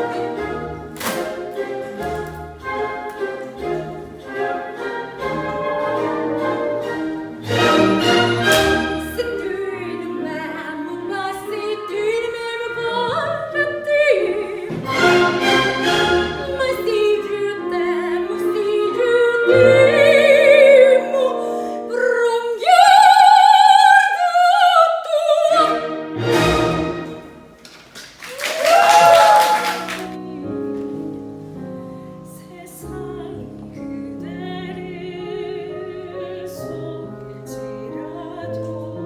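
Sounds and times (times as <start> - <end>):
soprano singing opera: 8.1 - 26.2, 32.0 - 39.0.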